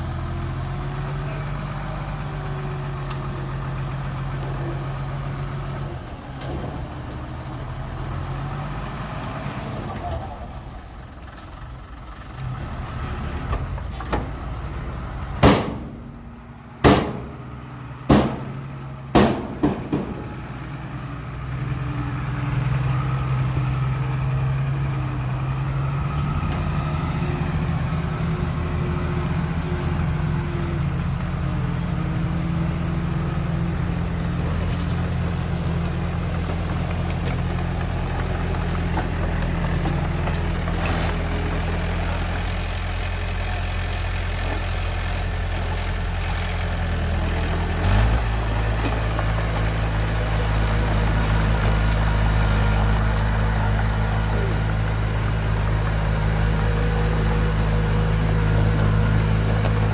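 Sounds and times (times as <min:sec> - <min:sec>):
heavy diesel engine running: 0:00.0 - 0:59.9
loud sharp bangs: 0:15.4 - 0:16.1, 0:16.8 - 0:17.5, 0:18.1 - 0:20.4.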